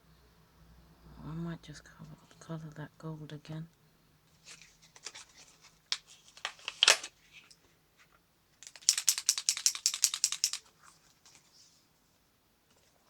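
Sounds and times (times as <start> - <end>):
clicks and taps: 8.6 - 10.7
paint marker ball rattling: 8.6 - 10.7.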